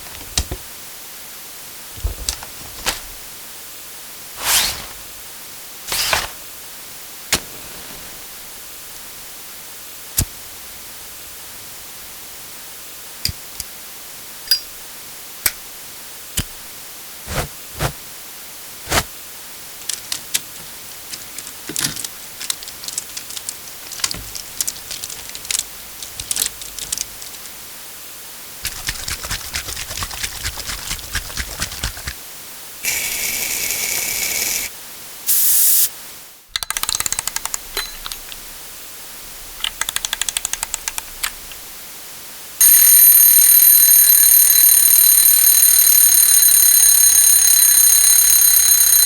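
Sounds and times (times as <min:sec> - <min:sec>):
steady hiss: 0:35.3 - 0:36.2
household objects clicking and knocking: 0:36.5 - 0:38.4.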